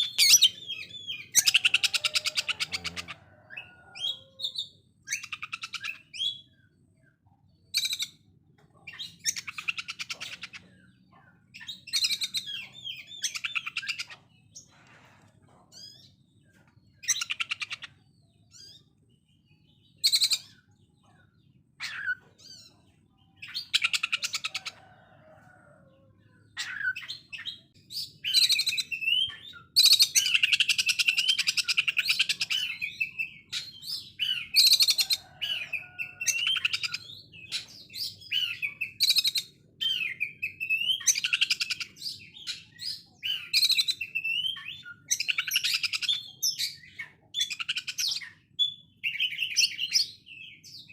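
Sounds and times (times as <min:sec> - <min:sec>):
bird singing harsh trills: 0:00.0 - 0:06.8, 0:26.4 - 0:50.9.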